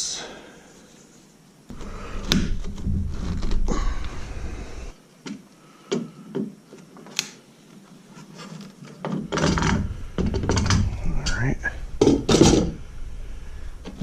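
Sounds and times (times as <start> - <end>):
plumbing fitting rubbing and rumbling: 1.7 - 5.0, 8.2 - 14.0.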